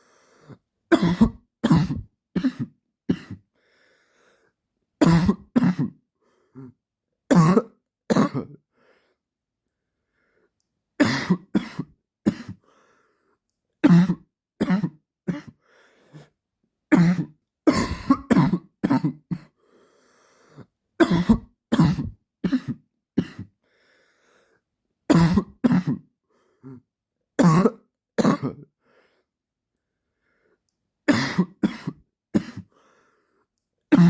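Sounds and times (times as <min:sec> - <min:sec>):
man coughing: 0:00.9 - 0:03.4, 0:05.0 - 0:06.0, 0:07.3 - 0:08.6, 0:11.0 - 0:12.6, 0:17.0 - 0:19.5, 0:21.0 - 0:23.5, 0:25.1 - 0:26.1, 0:27.4 - 0:28.7, 0:31.1 - 0:32.7.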